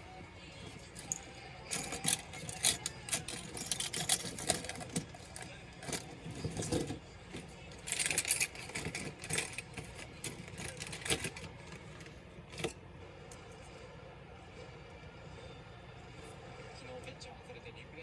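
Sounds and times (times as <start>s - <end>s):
clicks and clatter of small parts: 0.6s - 13.4s.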